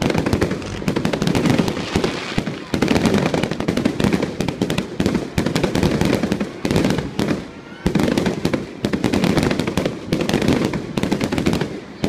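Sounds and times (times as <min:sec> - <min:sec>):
crowd voices: 0:00.0 - 0:12.0
fireworks cracking and banging: 0:00.0 - 0:12.0.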